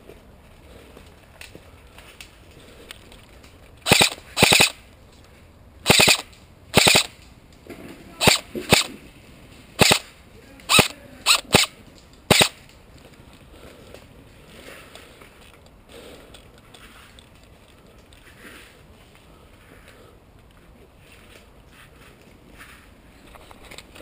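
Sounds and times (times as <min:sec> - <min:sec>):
airsoft rifle firing bursts: 0:03.8 - 0:04.8, 0:05.8 - 0:07.2, 0:08.2 - 0:09.0, 0:09.8 - 0:10.1, 0:10.7 - 0:12.6.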